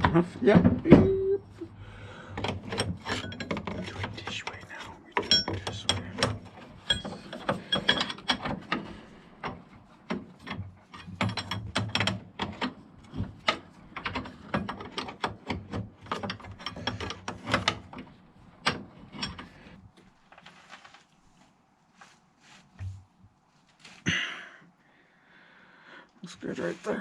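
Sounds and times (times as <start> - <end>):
metal knocks and clinks: 2.4 - 4.4, 5.2 - 8.8, 10.4 - 12.7.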